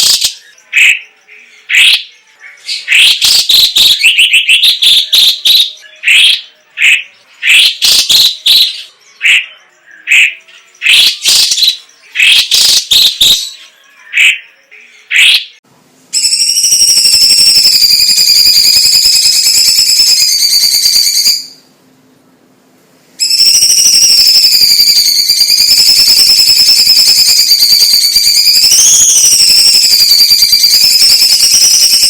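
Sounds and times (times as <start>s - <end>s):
bird singing with chattering trills: 0.0s - 15.6s, 23.2s - 32.0s.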